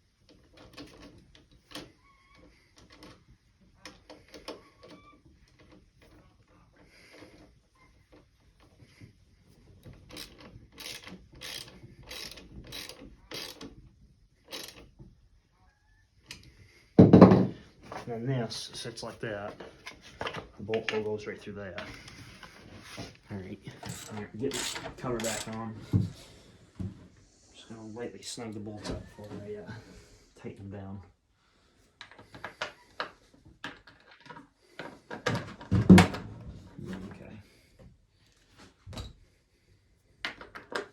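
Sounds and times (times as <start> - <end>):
ratchet wrench clicking: 10.1 - 13.7, 14.5 - 14.8, 23.9 - 25.5.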